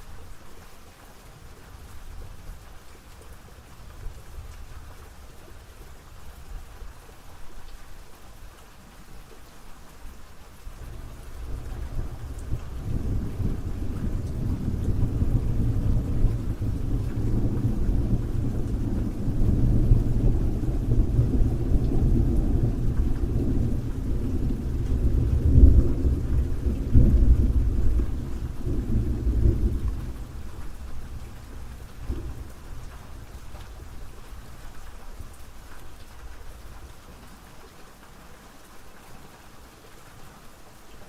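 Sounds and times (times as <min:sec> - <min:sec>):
steady rain: 0:00.0 - 0:41.0
rolling rumble of thunder: 0:10.8 - 0:34.6.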